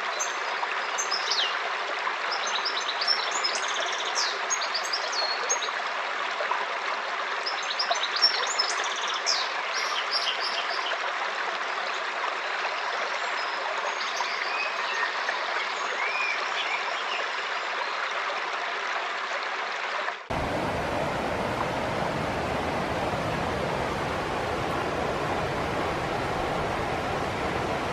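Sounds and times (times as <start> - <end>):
stream rushing: 20.2 - 27.9.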